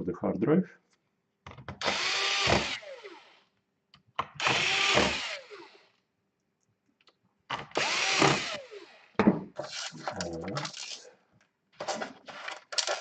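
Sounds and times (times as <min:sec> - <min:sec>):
electric screwdriver motor: 0:01.8 - 0:03.4, 0:04.4 - 0:05.9, 0:07.7 - 0:09.1.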